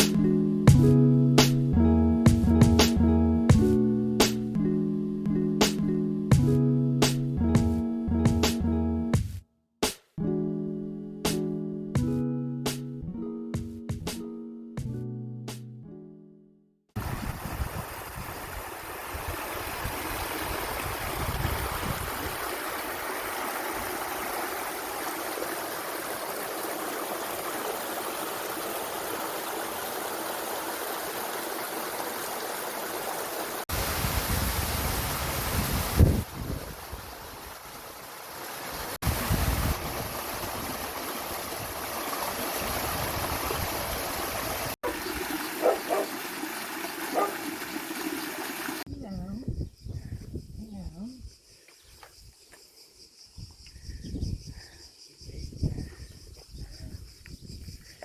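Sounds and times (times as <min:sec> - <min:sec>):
creek running over its bed: 0:17.0 - 0:48.9.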